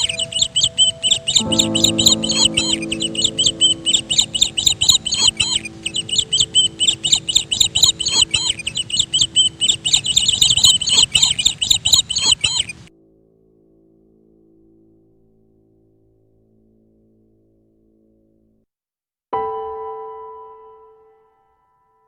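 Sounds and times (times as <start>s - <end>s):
songbird chirping: 0.0s - 12.9s
soft background music: 0.0s - 16.5s.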